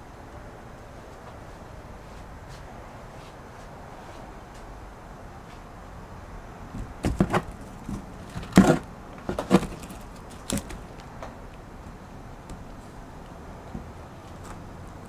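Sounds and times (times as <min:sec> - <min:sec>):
irregular knocks and thumps: 0:06.8 - 0:10.8.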